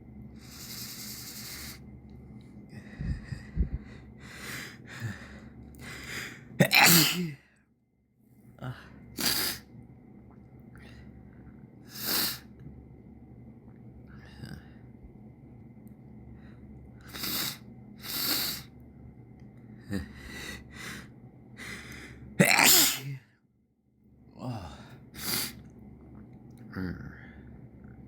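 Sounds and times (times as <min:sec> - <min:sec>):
person sniffing and breathing: 0:00.4 - 0:01.8, 0:02.8 - 0:06.5, 0:09.1 - 0:09.7, 0:11.9 - 0:12.5, 0:17.0 - 0:18.7, 0:19.9 - 0:22.2, 0:25.2 - 0:25.7
person sneezing: 0:06.6 - 0:07.4, 0:22.4 - 0:23.2.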